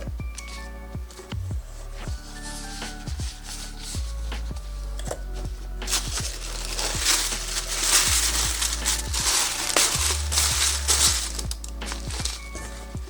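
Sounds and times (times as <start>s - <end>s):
packaging crinkling and rustling: 0.3s - 1.3s, 2.0s - 13.0s.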